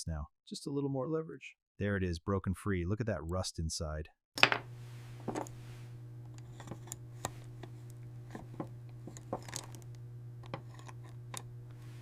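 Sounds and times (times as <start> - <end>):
steady low hum: 4.4 - 12.0.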